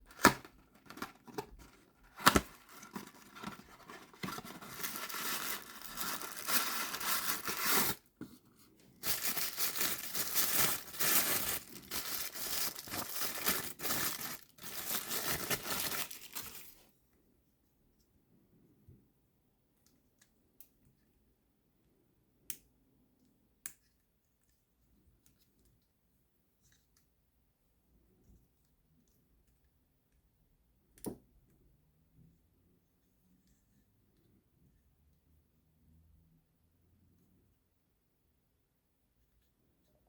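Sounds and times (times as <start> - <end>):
packaging tearing and crinkling: 0.1 - 8.0, 9.0 - 16.8.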